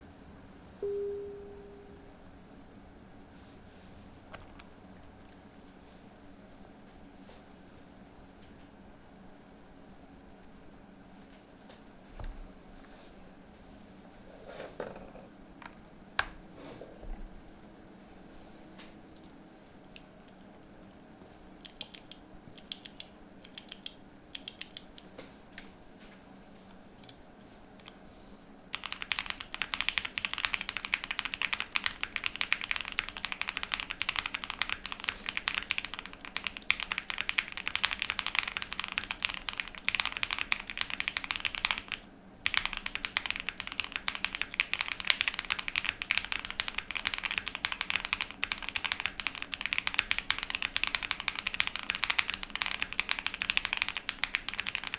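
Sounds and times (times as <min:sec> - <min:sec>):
typing on mechanical keyboard: 0:21.6 - 0:25.0, 0:28.7 - 0:54.9.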